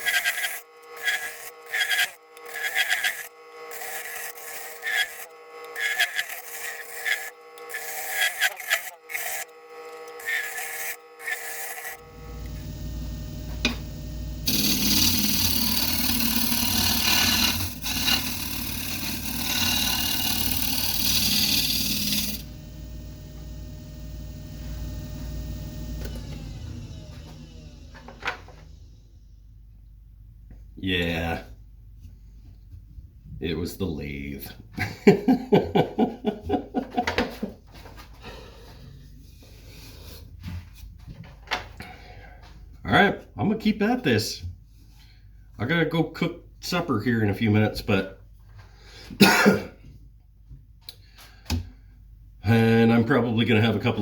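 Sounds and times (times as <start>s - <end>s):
turning tool scraping wood: 0.0s - 12.0s, 14.4s - 22.5s
lathe motor humming: 0.0s - 29.1s
man laughing: 34.7s - 37.6s, 49.2s - 49.7s.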